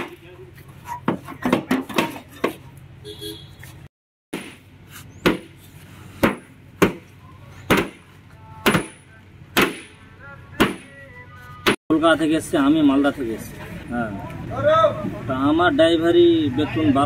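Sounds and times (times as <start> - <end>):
sharp knocks: 5.2 - 5.6, 6.2 - 7.1, 7.7 - 8.0, 8.6 - 10.0.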